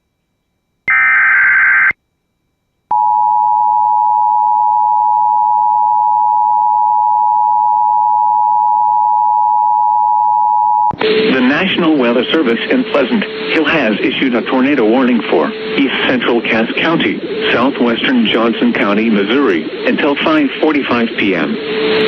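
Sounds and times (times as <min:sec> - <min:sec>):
digital header data burst: 0:11.0 - 0:22.0.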